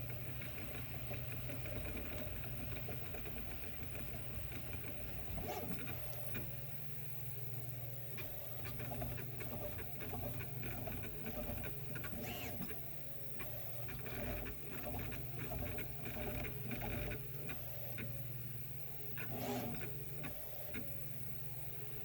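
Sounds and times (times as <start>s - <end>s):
stepper motors whirring and ticking: 7.9s - 18.4s, 19.0s - 21.1s.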